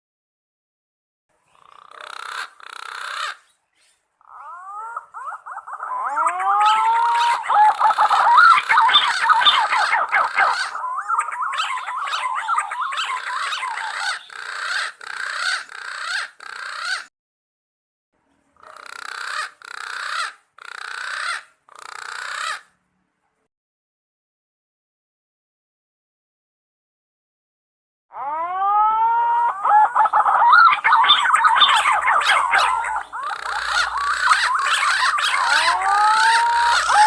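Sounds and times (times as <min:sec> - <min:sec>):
pigeons calling with whistles: 0:01.6 - 0:17.1, 0:28.2 - 0:37.0.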